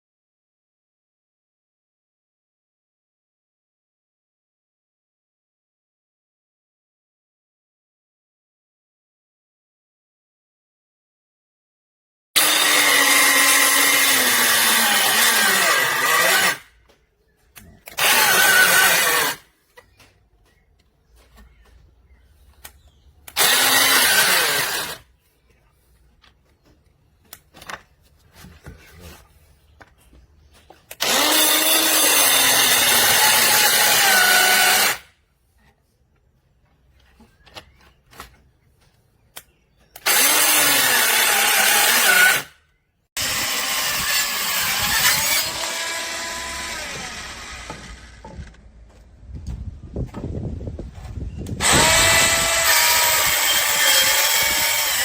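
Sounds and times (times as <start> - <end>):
circular saw motor whine: 43.2 - 48.4.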